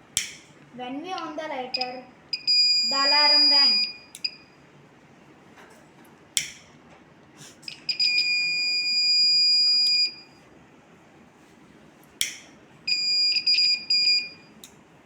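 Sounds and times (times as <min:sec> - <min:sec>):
fire alarm buzzer tone: 0:01.7 - 0:04.7, 0:07.7 - 0:10.4, 0:12.9 - 0:14.6.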